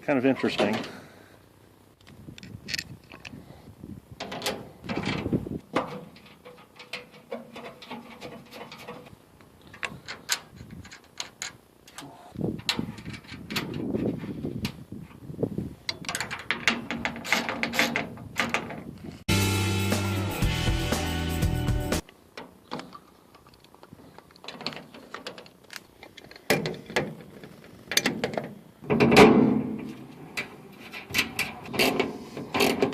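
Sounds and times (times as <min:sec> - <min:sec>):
music: 0:19.3 - 0:22.0.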